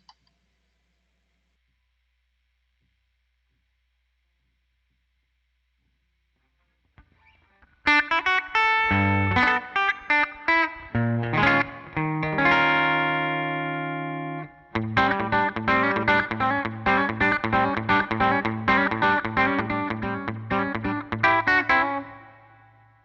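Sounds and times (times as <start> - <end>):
electric guitar picked notes and chords: 7.2 - 23.0.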